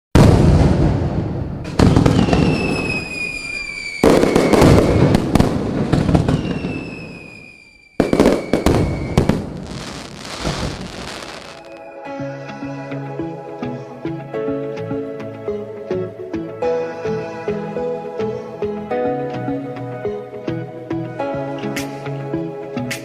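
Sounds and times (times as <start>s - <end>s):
fireworks bursting and crackling: 0.2s - 11.8s
falling firework whistles: 1.7s - 12.0s.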